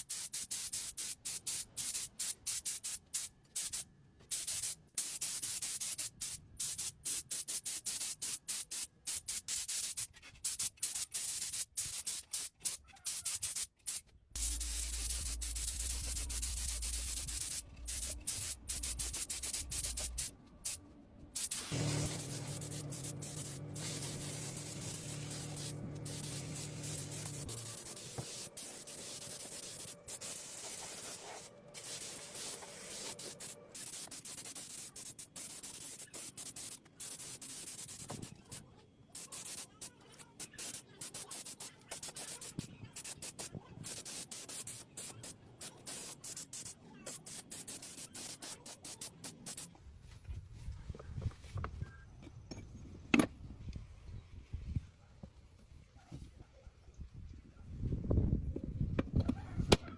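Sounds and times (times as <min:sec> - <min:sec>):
hand sanding metal: 0:14.4 - 0:20.8, 0:21.4 - 0:38.4
steady machine hum: 0:14.4 - 0:28.0.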